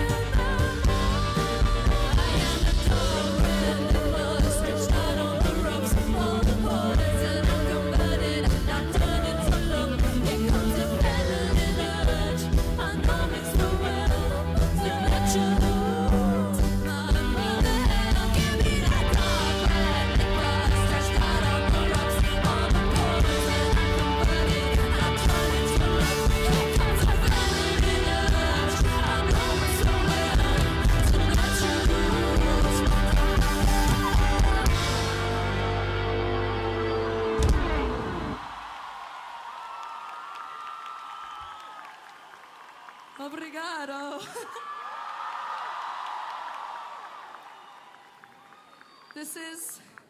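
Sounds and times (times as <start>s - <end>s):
woman singing: 0.0s - 35.6s, 49.2s - 49.8s
rock band playing live: 0.0s - 38.5s.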